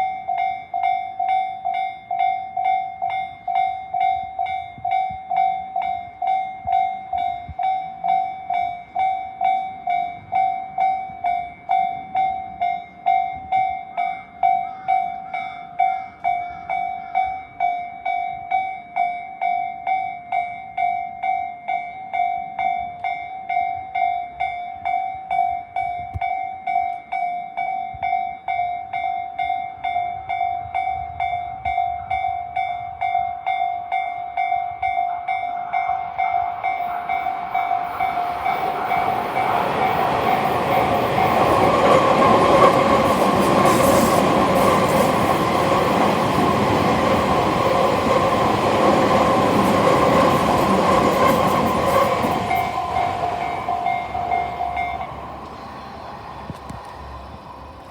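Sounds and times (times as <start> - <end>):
railroad crossing signal clanging: 22.6 - 57.9.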